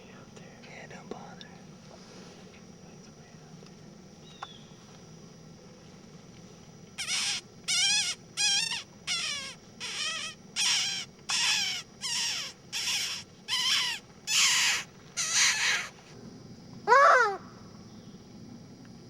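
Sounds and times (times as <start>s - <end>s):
animal making harsh calls: 7.0s - 16.0s.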